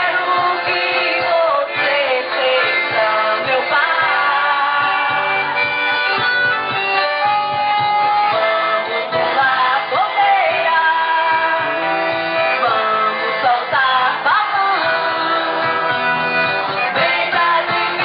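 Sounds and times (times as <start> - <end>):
accordion holding long notes: 0.0 - 18.0
guitar: 0.0 - 18.0
steady beat: 4.1 - 9.7.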